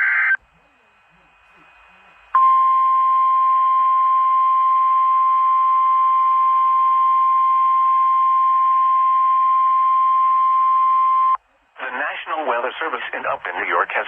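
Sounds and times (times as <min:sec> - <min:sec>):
faint radio hiss: 0:00.0 - 0:04.2, 0:09.9 - 0:14.0.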